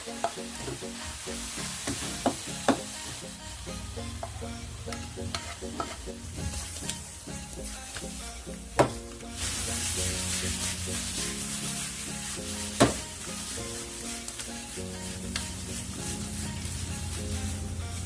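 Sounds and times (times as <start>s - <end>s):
food sizzling in a frying pan: 0.0s - 18.0s.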